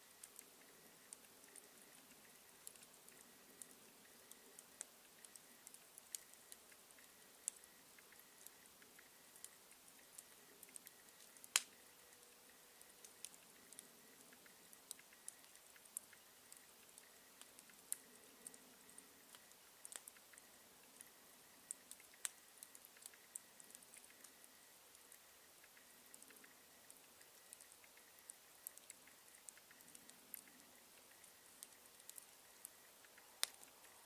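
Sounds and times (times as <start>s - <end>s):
campfire crackling: 0.0s - 34.0s.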